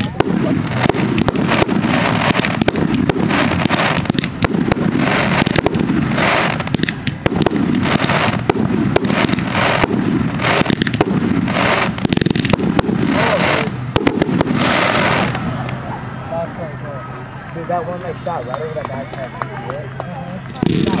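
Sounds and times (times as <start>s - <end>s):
firework shells bursting: 0.0s - 15.4s
fireworks crackling: 0.0s - 16.1s, 17.0s - 21.0s.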